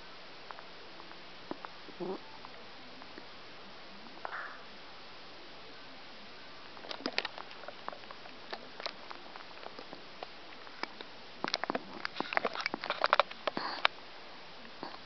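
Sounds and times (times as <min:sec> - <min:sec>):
dog snoring with clicks and pops: 0:13.5 - 0:13.9, 0:14.8 - 0:15.0
breathy puff: 0:13.6 - 0:13.9.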